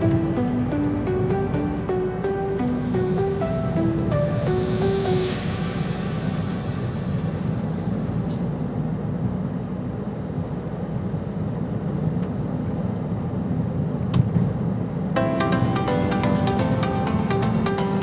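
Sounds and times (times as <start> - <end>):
jet aircraft rumble overhead: 0.0 - 10.8.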